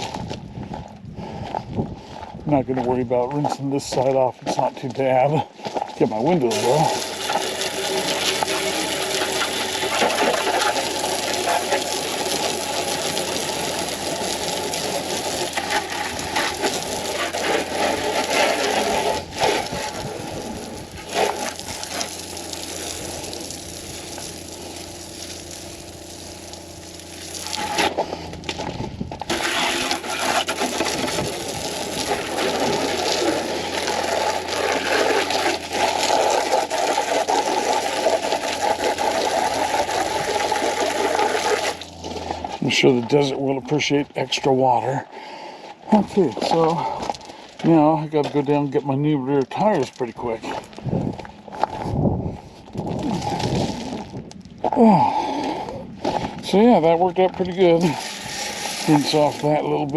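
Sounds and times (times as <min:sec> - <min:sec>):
hose spraying water on vehicle: 0:06.4 - 0:28.1, 0:29.3 - 0:42.0, 0:57.5 - 0:59.9.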